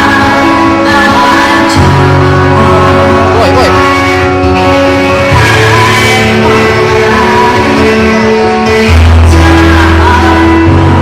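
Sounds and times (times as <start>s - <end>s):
musical accompaniment: 0.0s - 11.0s.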